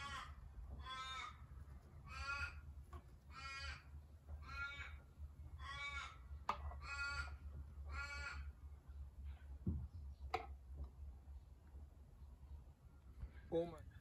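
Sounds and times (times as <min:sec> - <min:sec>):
crow cawing: 0:00.0 - 0:01.4, 0:02.0 - 0:02.6, 0:03.3 - 0:05.0, 0:05.6 - 0:08.5.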